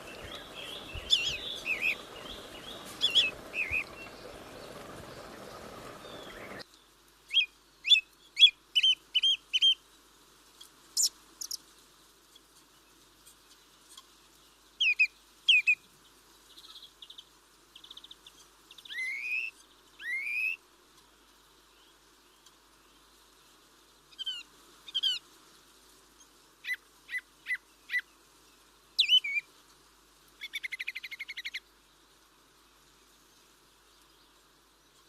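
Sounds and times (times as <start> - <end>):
birds chirping and trilling: 0.0 - 6.6
background hiss: 0.0 - 35.0.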